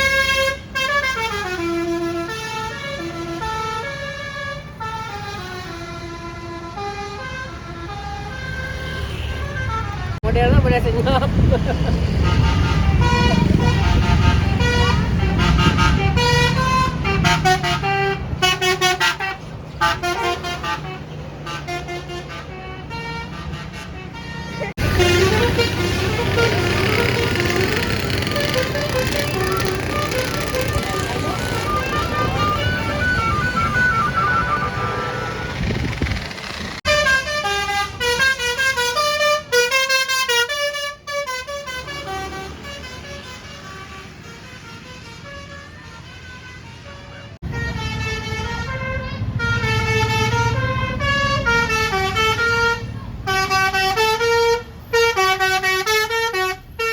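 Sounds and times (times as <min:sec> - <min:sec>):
multi-tone bus horn jingle: 0:00.0 - 0:10.3, 0:12.1 - 0:35.8, 0:36.9 - 0:56.9
bus engine hum: 0:00.0 - 0:56.9
low engine rumble: 0:24.6 - 0:37.0.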